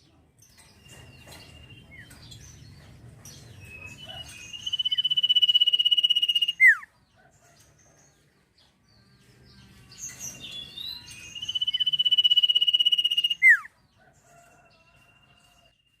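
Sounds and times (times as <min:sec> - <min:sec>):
songbird trilling: 0:03.6 - 0:06.8, 0:10.3 - 0:13.6.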